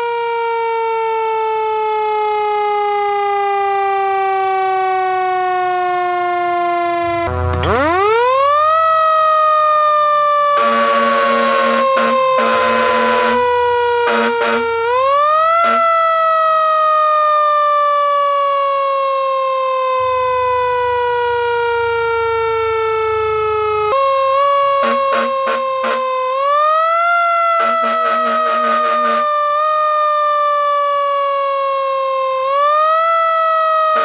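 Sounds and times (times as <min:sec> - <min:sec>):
siren winding up and falling: 0:00.0 - 0:34.0
air horn blasts: 0:10.6 - 0:16.2, 0:24.4 - 0:26.5, 0:27.5 - 0:29.5.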